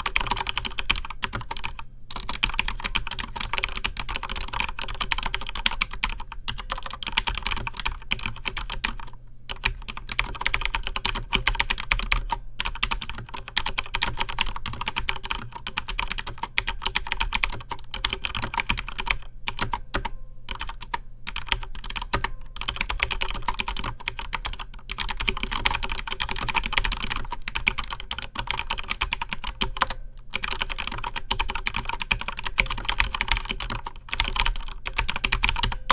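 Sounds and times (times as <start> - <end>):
mechanical keyboard typing: 0.0 - 35.9.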